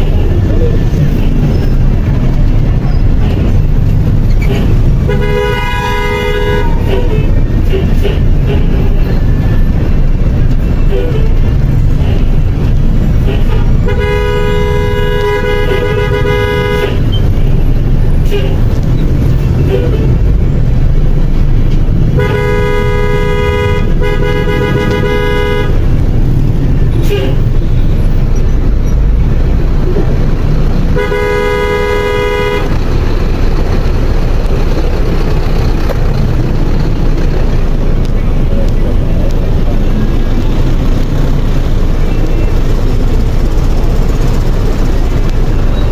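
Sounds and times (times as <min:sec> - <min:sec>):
street traffic rumble: 0:00.0 - 0:45.9
vehicle horn: 0:04.4 - 0:09.3, 0:10.6 - 0:18.7, 0:22.0 - 0:26.0, 0:30.9 - 0:33.0.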